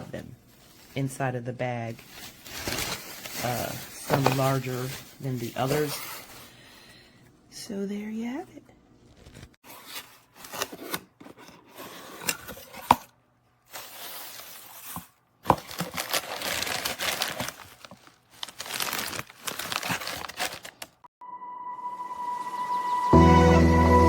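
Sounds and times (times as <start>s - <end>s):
bag crinkling and rustling: 0.4s - 1.2s, 1.8s - 6.7s, 13.7s - 21.1s.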